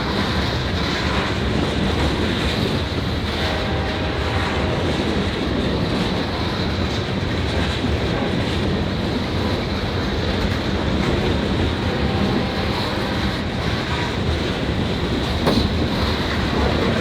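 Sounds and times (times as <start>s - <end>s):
train wheels rumbling on rail: 0.0s - 17.0s
wheels clickety-clack: 0.0s - 17.0s.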